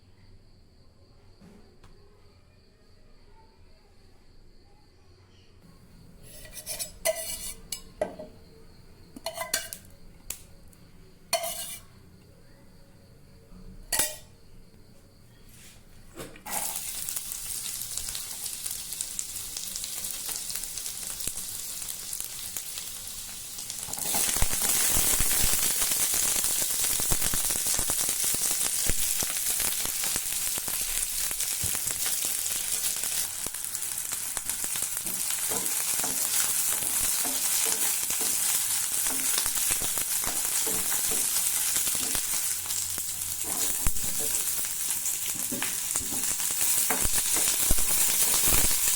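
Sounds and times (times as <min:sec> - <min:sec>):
food sizzling in hot oil: 0:06.2 - 0:08.3, 0:09.2 - 0:10.5, 0:11.3 - 0:11.9, 0:13.9 - 0:14.3, 0:16.4 - 0:48.9
oil crackling: 0:16.5 - 0:48.9.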